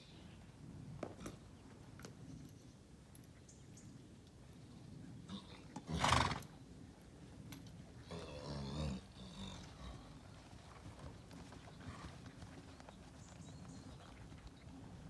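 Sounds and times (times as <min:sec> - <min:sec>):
horse whinnying: 0:05.8 - 0:06.5
horse hooves beating: 0:09.6 - 0:15.0.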